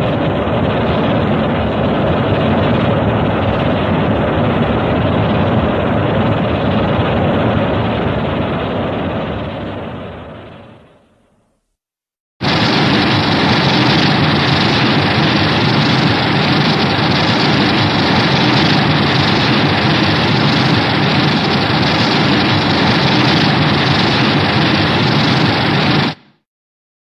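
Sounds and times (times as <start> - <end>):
loud steady unpitched noise: 12.4 - 26.4.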